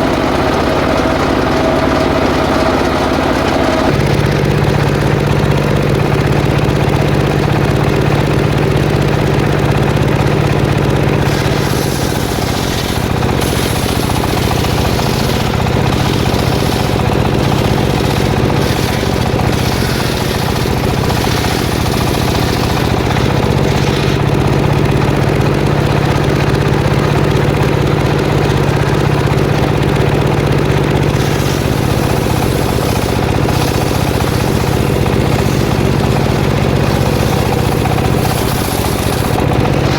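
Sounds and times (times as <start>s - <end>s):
saw blade cutting wood: 0.0s - 5.1s, 11.2s - 27.2s, 30.8s - 39.9s
engine-driven circular saw running: 0.0s - 39.9s.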